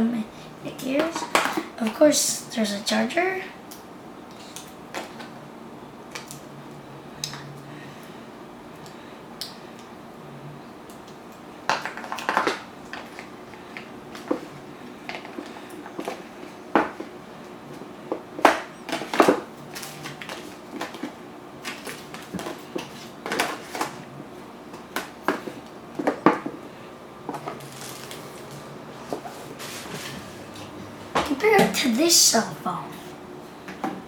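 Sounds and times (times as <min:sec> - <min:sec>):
packaging rustling and clicking: 0:27.3 - 0:28.6.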